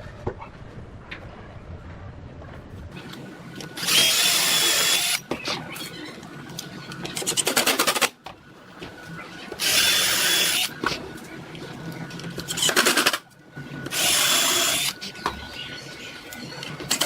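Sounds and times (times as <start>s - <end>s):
power tool whining: 3.8s - 5.2s, 9.6s - 10.7s, 13.9s - 15.0s.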